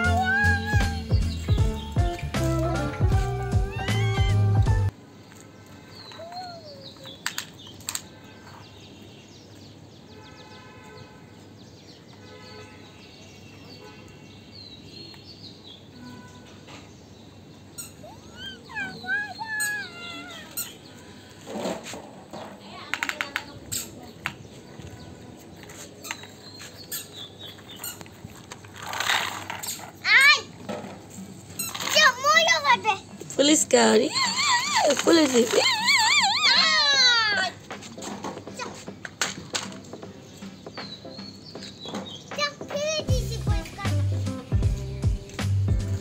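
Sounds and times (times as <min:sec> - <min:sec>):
plastic toy vehicles clicking: 0:06.0 - 0:08.2, 0:22.9 - 0:23.9, 0:27.8 - 0:30.0, 0:34.4 - 0:36.2
faint bird chirps: 0:17.6 - 0:21.3.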